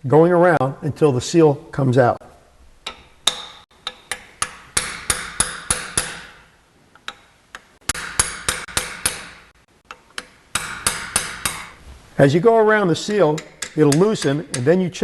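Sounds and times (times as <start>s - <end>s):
hammer striking a metal chisel: 2.8s - 6.5s, 7.1s - 11.8s, 13.2s - 14.8s.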